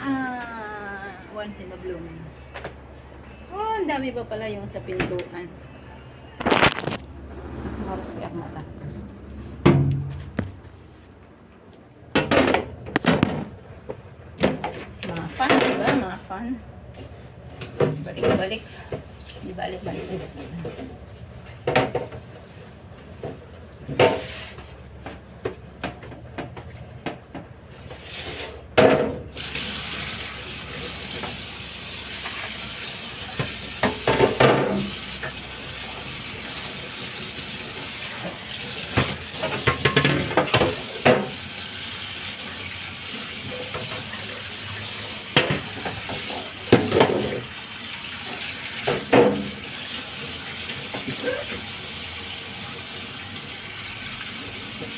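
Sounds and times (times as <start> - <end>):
items clattering and knocking: 12.1 - 16.2, 33.4 - 35.4, 38.3 - 41.4, 45.3 - 47.5
tap water running into sink: 29.3 - 54.9.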